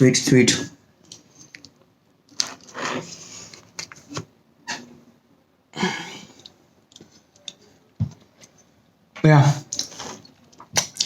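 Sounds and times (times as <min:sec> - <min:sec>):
person breathing: 0:05.8 - 0:06.5.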